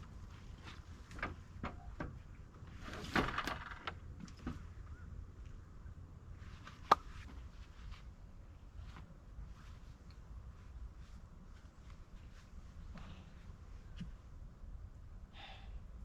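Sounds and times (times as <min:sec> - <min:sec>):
low background hiss: 0:00.0 - 0:16.0
rustle: 0:06.3 - 0:14.1.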